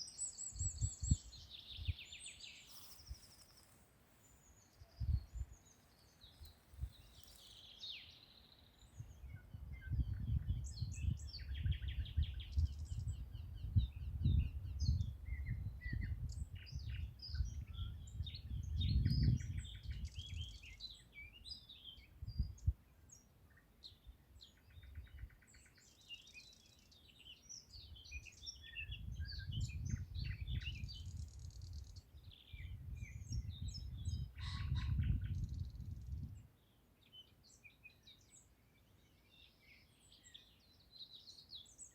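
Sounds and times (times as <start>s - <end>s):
songbirds singing: 0.0s - 41.9s.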